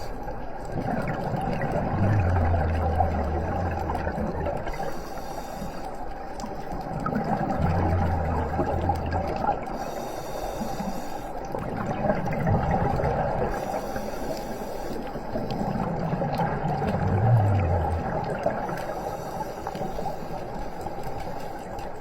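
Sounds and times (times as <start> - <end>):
underwater watery rush: 0.0 - 22.0
low hum: 1.7 - 5.6, 7.3 - 9.9.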